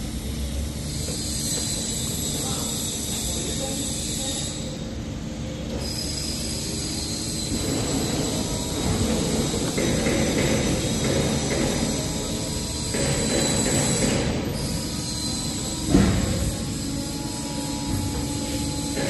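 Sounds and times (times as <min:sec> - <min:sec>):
machinery running: 0:06.4 - 0:19.0.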